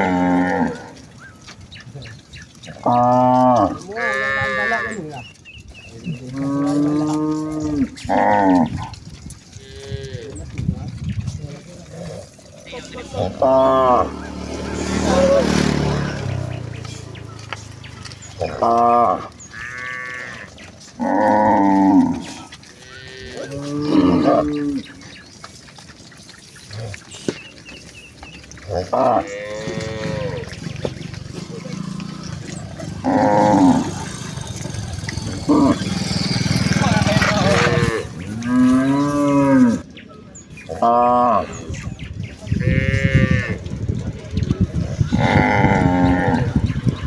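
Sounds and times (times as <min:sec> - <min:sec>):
cattle mooing: 0:00.0 - 0:05.3, 0:05.9 - 0:10.7, 0:11.5 - 0:25.4, 0:26.4 - 0:39.8, 0:40.7 - 0:41.8, 0:42.4 - 0:43.8, 0:44.6 - 0:47.0.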